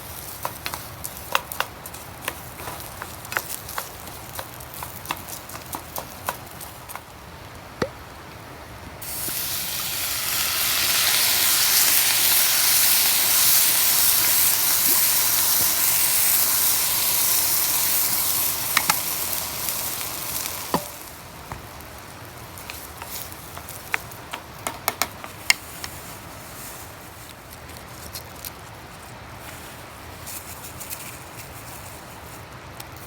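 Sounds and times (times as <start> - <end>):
clicks and pops: 7.8 - 8.0
food sizzling in a hot pan: 9.0 - 25.5.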